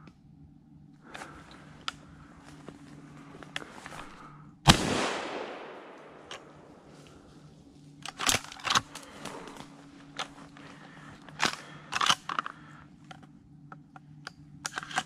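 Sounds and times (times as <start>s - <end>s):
gunshot echoing: 4.7s - 6.8s.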